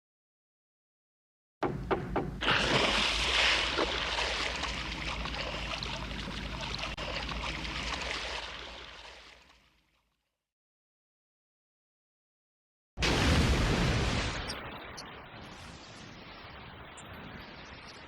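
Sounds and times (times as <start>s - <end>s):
rushing crackling water-like effect: 2.4s - 10.0s, 13.0s - 18.0s.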